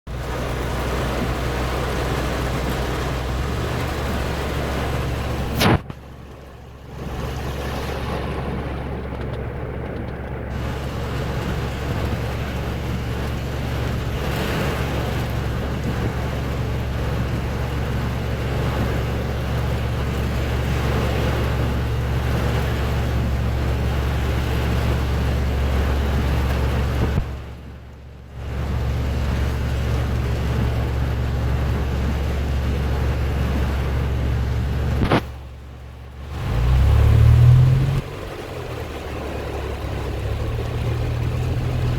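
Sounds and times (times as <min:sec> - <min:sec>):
traffic low rumble: 0:00.1 - 0:41.9.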